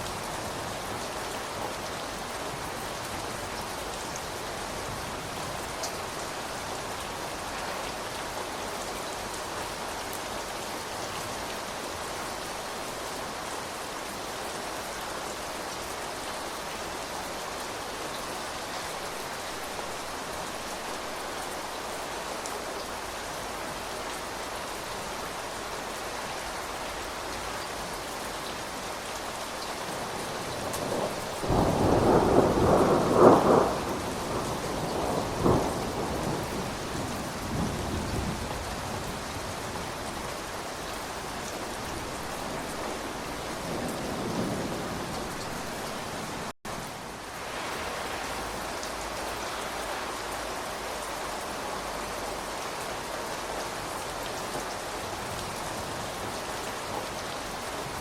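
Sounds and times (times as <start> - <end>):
rain pattering: 0.0 - 58.0
thunder rolling: 30.6 - 36.5.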